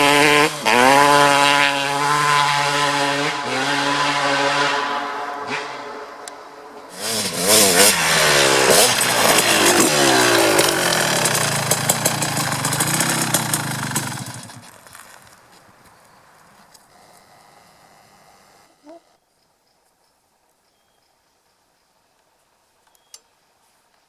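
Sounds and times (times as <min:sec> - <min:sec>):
dirt bike engine revving: 0:00.0 - 0:14.7.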